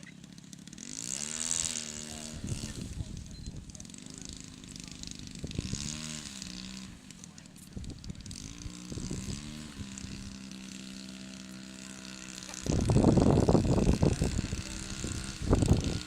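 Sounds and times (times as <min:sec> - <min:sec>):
model airplane engine droning: 0:00.0 - 0:16.0
wind buffeting microphone: 0:02.3 - 0:03.7, 0:05.3 - 0:06.5, 0:07.7 - 0:10.4, 0:12.6 - 0:16.0.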